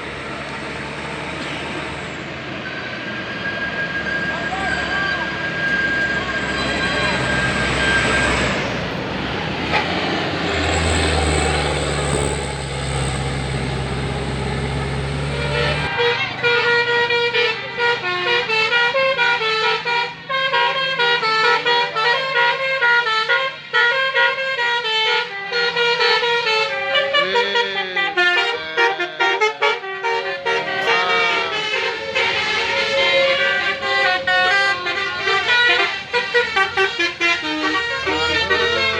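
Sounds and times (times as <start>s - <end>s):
bus musical horn melody: 2.6s - 38.9s
low engine drone: 6.5s - 16.0s, 25.8s - 38.9s.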